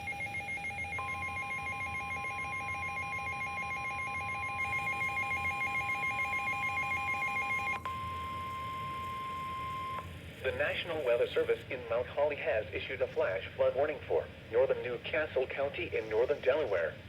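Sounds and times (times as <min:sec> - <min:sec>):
two-pitch electronic alarm: 0:00.0 - 0:10.0
steady warning alarm tone: 0:00.0 - 0:11.6.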